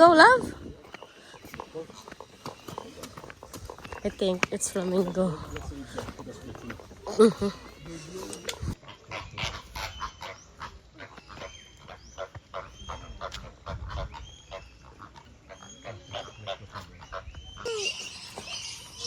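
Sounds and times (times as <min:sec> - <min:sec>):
bird chirping: 0:00.0 - 0:19.0
flamingos honking: 0:06.6 - 0:19.0.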